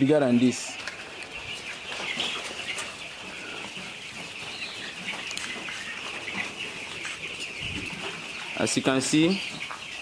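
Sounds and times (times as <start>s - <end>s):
chicks peeping and clucking: 0.0s - 10.0s.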